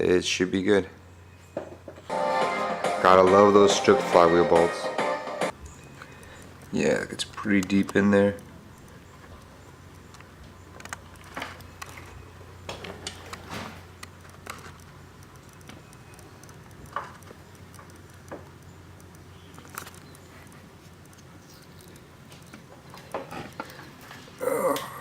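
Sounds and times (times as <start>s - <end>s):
light clicks and taps: 14.0s - 23.9s.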